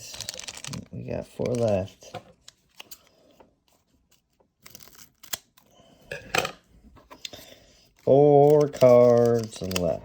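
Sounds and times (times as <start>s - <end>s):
wrapper crinkling: 0.0s - 2.1s
scissors snipping foil pack: 8.0s - 10.0s.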